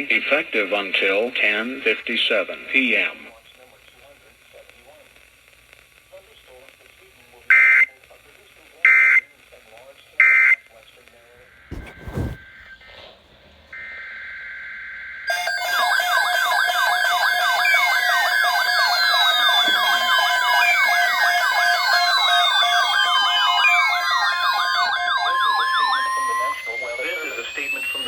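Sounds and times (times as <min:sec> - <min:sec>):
short thump: 0:11.7 - 0:12.7
falling siren glides: 0:15.3 - 0:28.0.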